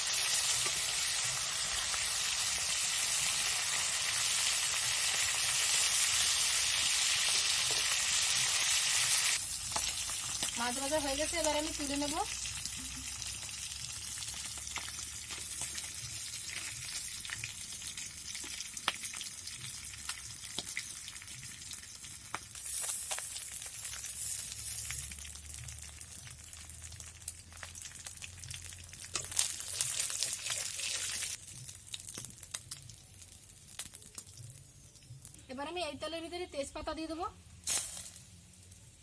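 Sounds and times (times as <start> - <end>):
fish sizzling in oil: 0.0 - 35.4, 37.5 - 39.0.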